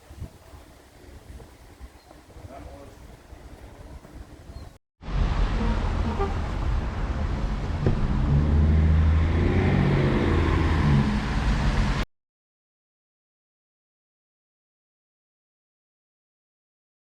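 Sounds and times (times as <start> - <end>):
train rumbling: 2.2 - 12.0.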